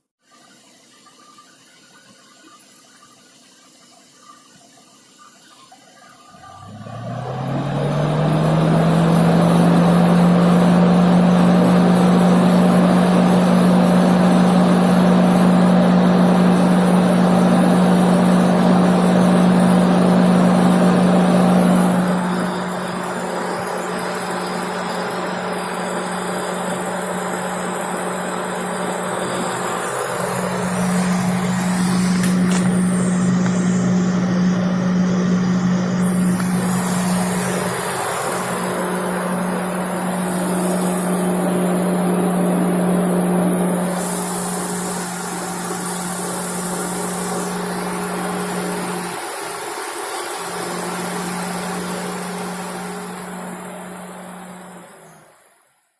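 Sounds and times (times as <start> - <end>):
car engine idling: 1.6 - 55.7
cooling fan humming: 5.1 - 55.6.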